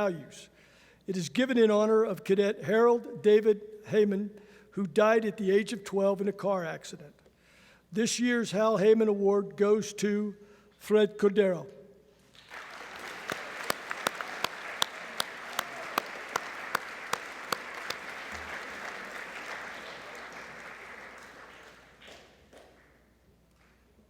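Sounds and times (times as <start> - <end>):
audience applauding: 12.3 - 23.8
person clapping steady beat: 12.4 - 22.9.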